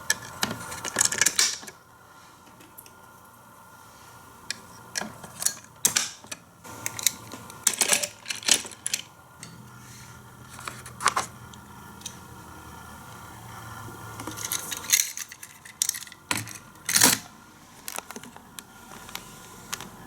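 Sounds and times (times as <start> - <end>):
plastic toy pieces clicking: 14.4 - 17.2.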